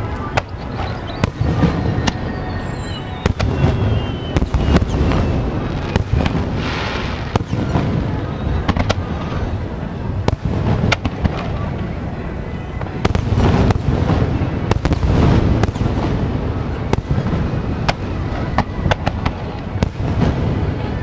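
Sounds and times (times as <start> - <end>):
falling whistles: 0.0 - 8.8
crackling hiss: 0.0 - 21.0
fireworks bangs: 0.0 - 21.0.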